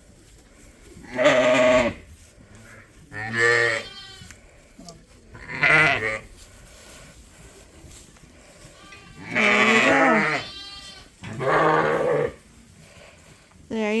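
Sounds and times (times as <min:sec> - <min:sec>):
sheep bleating: 0:01.1 - 0:02.0, 0:03.1 - 0:04.3, 0:05.4 - 0:06.2, 0:08.7 - 0:12.4.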